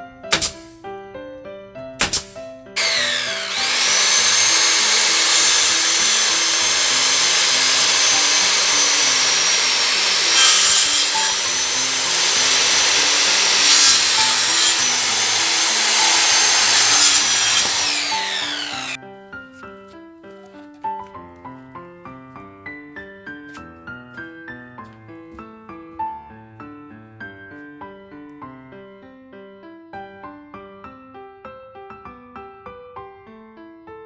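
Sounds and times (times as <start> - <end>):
power saw cutting wood: 2.1 - 19.0.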